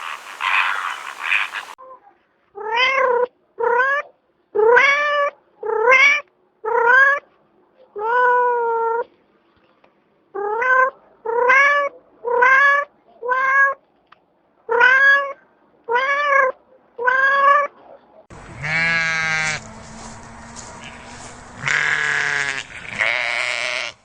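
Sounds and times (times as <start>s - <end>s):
sheep bleating: 18.3s - 24.0s.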